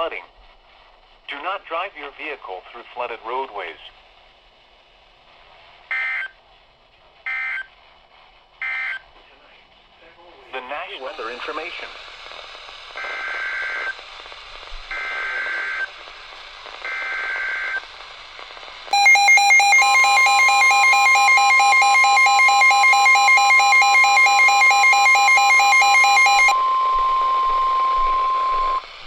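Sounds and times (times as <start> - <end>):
steady long alarm beep: 13.0 - 14.0, 14.9 - 15.9, 16.9 - 17.8, 18.9 - 28.8
harsh warbling alarm tone: 18.9 - 28.8
screechy data bursts: 18.9 - 28.8.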